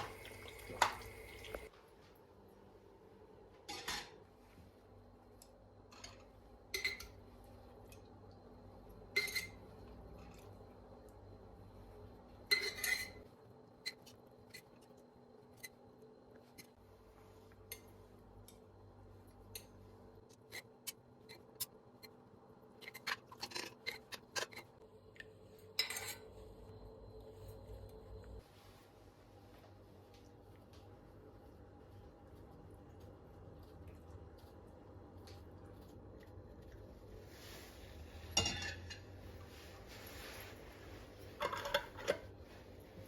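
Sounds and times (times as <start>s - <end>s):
utensils and dishes clinking: 12.5s - 13.2s, 38.3s - 39.2s, 41.4s - 42.3s
dishes clattering: 38.3s - 39.1s, 41.4s - 42.3s.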